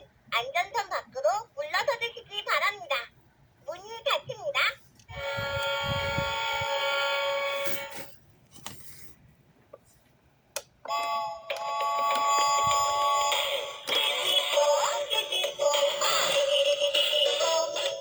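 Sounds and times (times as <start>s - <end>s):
buzzer-like electronic tone: 5.2s - 7.9s.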